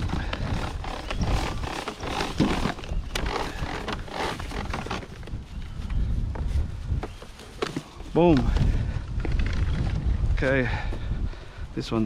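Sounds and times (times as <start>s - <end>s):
junk scraping and knocking: 0.0s - 5.4s.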